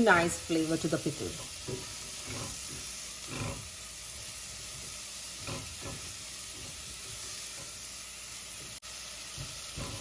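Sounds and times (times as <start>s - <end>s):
food sizzling in a pan: 0.0s - 10.0s
spoon scraping a pan: 1.2s - 8.0s.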